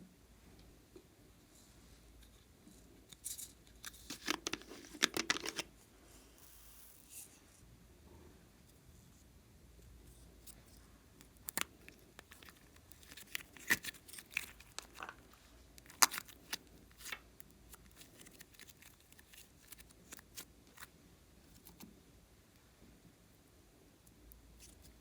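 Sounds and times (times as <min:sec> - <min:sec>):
slime clicks and crackles: 0:11.2 - 0:15.2, 0:15.8 - 0:20.9.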